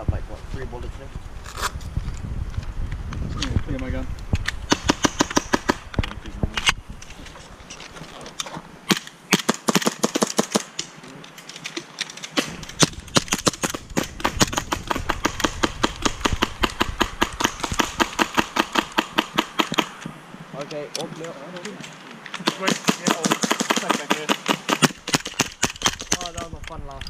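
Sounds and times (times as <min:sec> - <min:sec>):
airsoft guns firing: 0:04.7 - 0:05.9, 0:08.9 - 0:10.8, 0:12.3 - 0:20.0, 0:22.4 - 0:26.4.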